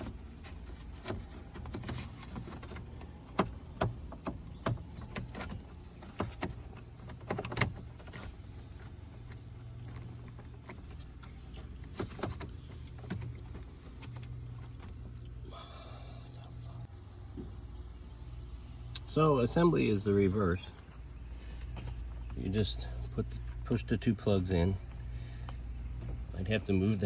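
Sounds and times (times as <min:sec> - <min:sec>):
sharp plastic clicks and knocks: 0:00.0 - 0:15.2
steady low hum: 0:00.0 - 0:27.0.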